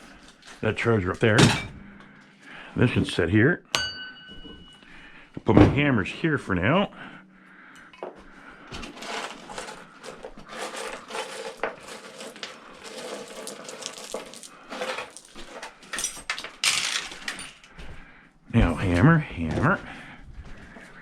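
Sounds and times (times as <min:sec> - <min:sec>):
metal hand tools clinking: 0:09.0 - 0:17.7.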